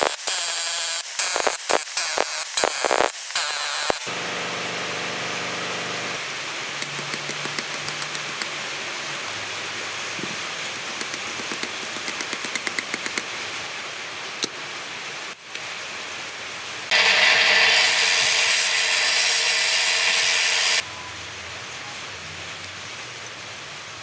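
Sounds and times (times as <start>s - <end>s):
power tool running: 0.0s - 6.2s, 16.9s - 20.8s.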